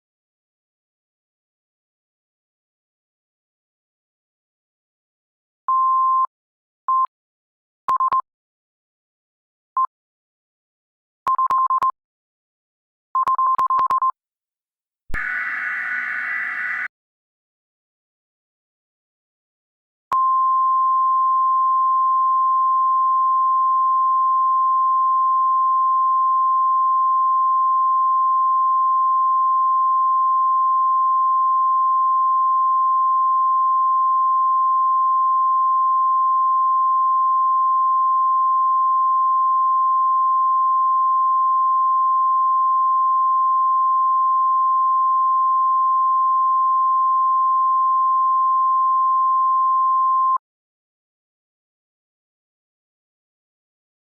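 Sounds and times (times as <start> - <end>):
steady high electronic tone: 15.2 - 16.9.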